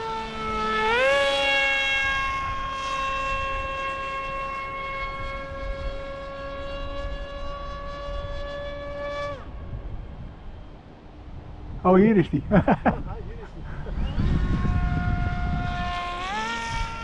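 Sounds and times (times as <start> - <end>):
model plane motor whining: 0.0 - 10.9, 13.4 - 17.0
low wind rumble: 0.0 - 17.0.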